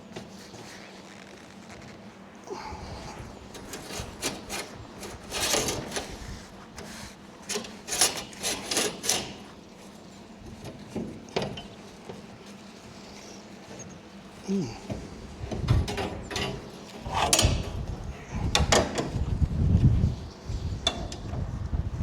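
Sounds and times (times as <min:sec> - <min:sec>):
steel plate scraping on steel: 0:03.5 - 0:09.5.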